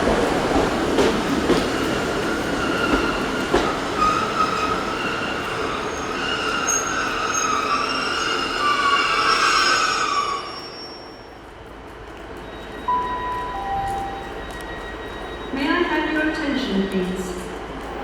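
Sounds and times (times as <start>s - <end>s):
train rolling on rails: 0.0s - 18.0s
high wavering brake squeal: 4.0s - 11.4s, 12.4s - 15.7s.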